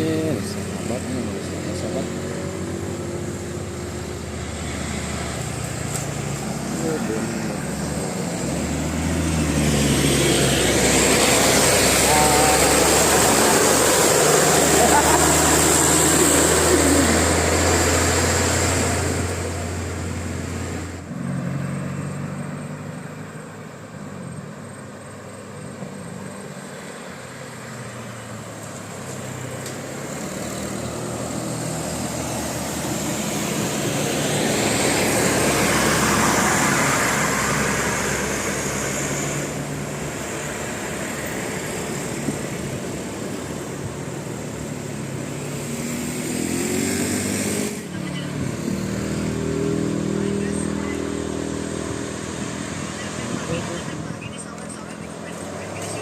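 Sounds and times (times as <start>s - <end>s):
vehicle passing: 0.0s - 23.6s, 24.5s - 56.0s
vehicle engines running: 0.0s - 56.0s.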